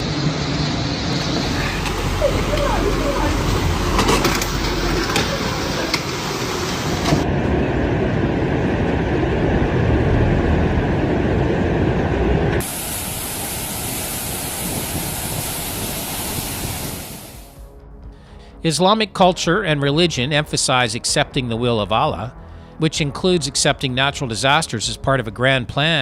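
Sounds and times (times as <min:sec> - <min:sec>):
rushing floodwater: 0:00.0 - 0:07.3, 0:12.6 - 0:17.6
heavy rain: 0:00.0 - 0:17.6.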